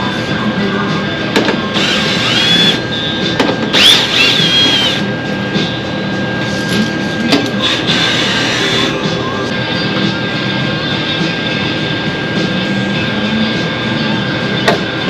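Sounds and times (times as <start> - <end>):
power tool whining on sheet metal: 1.6 - 5.1, 7.2 - 9.1.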